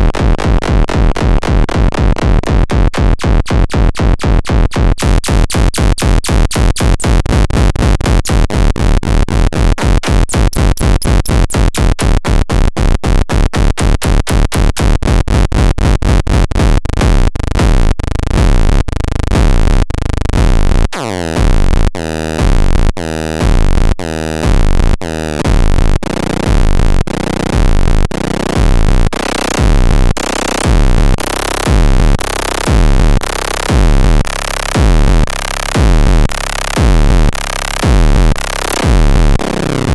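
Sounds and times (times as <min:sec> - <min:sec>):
minimal techno music: 0:00.0 - 0:19.7, 0:28.6 - 0:39.9
deep bass: 0:00.0 - 0:39.9.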